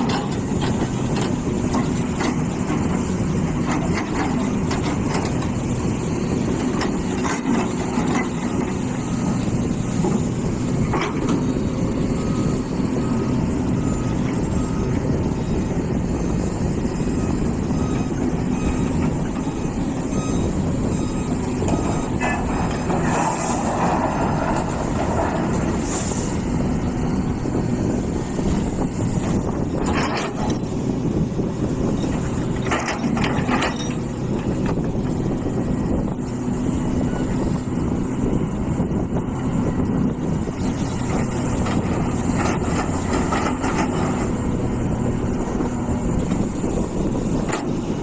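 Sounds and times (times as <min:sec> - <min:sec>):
excavator diesel engine running: 0:00.0 - 0:48.0
alarm beeping: 0:17.1 - 0:22.3.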